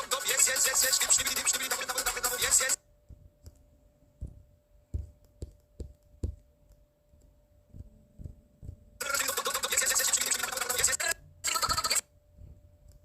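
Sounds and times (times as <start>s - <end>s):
faint steady hum: 0.0s - 13.0s
soft knocks and taps: 4.2s - 8.8s.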